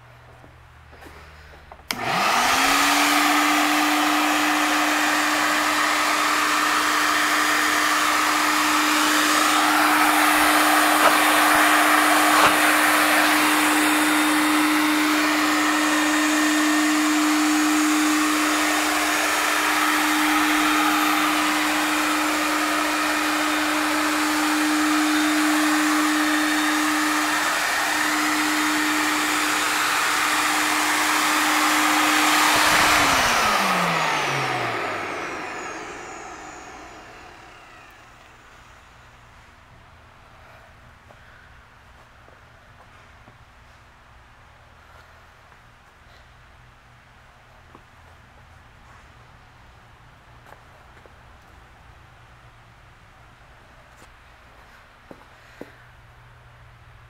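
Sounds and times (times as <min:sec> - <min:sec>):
shop vacuum motor humming: 0:00.0 - 0:39.6
rushing air: 0:08.6 - 0:14.7, 0:29.4 - 0:39.0.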